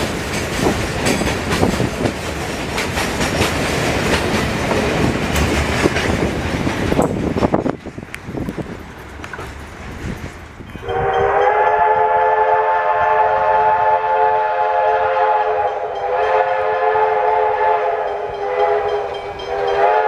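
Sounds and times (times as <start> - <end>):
freight train rumble: 0.0 - 20.0
locomotive horn chord: 10.8 - 20.0.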